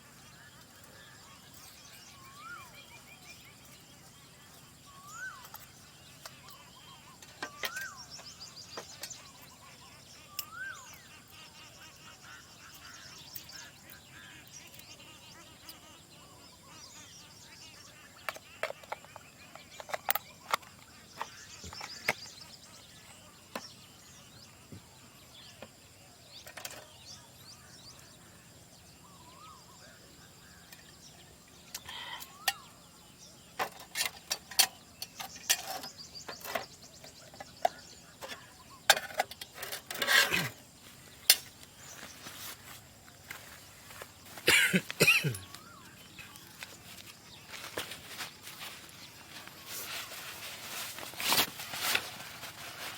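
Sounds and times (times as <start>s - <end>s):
birds whistling and chirping: 0.0s - 11.3s, 18.2s - 25.6s, 29.0s - 42.7s, 43.3s - 52.2s.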